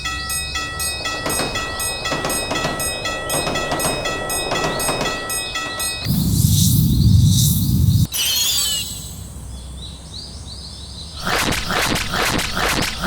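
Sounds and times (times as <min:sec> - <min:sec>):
train wheels clattering: 0:00.0 - 0:07.6
level crossing ringing tones: 0:00.0 - 0:09.5.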